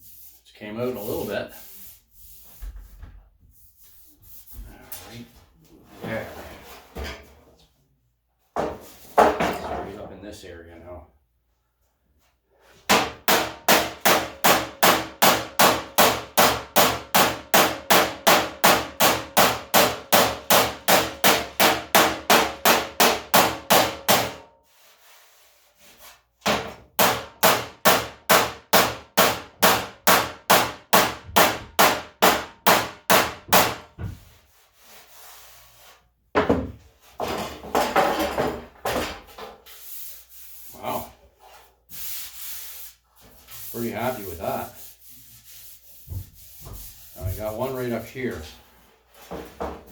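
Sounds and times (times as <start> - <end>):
rubbing and scraping on panel: 0.0 - 7.3, 24.1 - 26.3, 34.1 - 36.2, 39.4 - 49.9.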